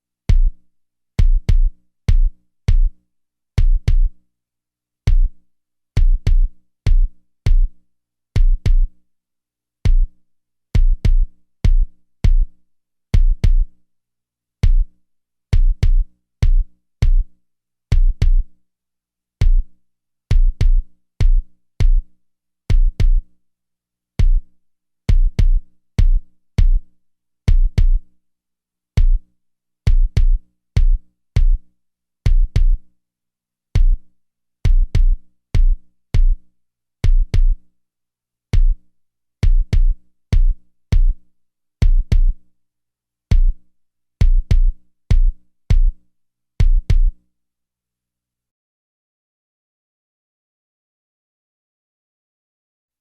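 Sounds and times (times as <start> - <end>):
deep electronic kick drum thumps: 0.3 - 0.6, 1.2 - 3.0, 3.6 - 4.1, 5.1 - 5.3, 6.0 - 7.7, 8.4 - 8.9, 9.9 - 10.1, 10.8 - 12.5, 13.2 - 13.7, 14.6 - 14.9, 15.6 - 17.2, 17.9 - 18.4, 19.4 - 19.6, 20.3 - 22.0, 22.7 - 23.2, 24.2 - 24.4, 25.1 - 26.8, 27.5 - 28.0, 29.0 - 29.2, 29.9 - 31.6, 32.3 - 32.8, 33.8 - 34.0, 34.6 - 36.4, 37.0 - 37.6, 38.6 - 38.8, 39.4 - 41.2, 41.8 - 42.4, 43.3 - 43.6, 44.2 - 46.0, 46.6 - 47.1.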